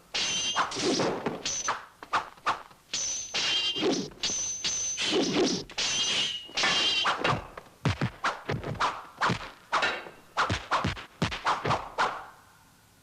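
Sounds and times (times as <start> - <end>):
high whistling tones: 1.5 - 7.6.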